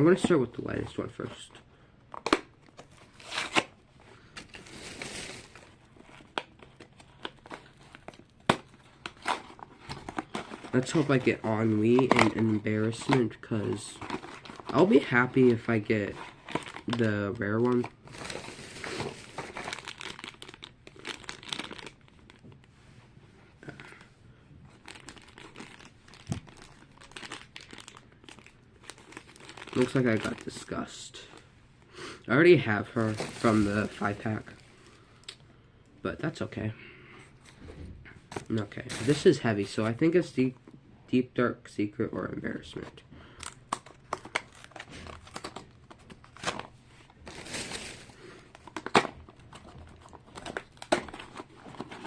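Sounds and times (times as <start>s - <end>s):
packaging tearing and rustling: 2.2s - 3.8s, 4.4s - 15.6s, 16.2s - 22.4s, 24.7s - 30.8s, 33.0s - 34.6s, 38.3s - 39.4s, 43.4s - 52.0s
packaging crinkling: 4.3s - 22.5s, 24.7s - 31.4s, 32.8s - 35.3s, 43.4s - 52.0s.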